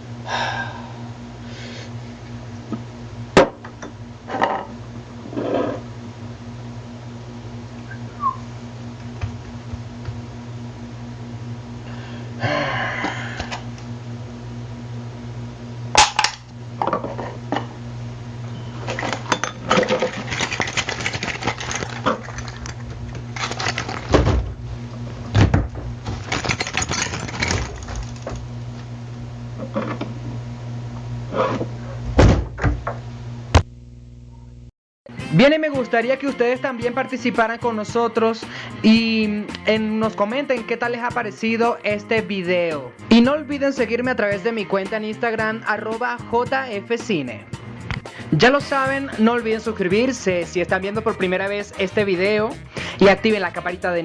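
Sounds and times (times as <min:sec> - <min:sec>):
steady low hum: 0:00.0 - 0:34.7
clinks and knocks of small objects: 0:18.9 - 0:24.2, 0:26.0 - 0:28.4.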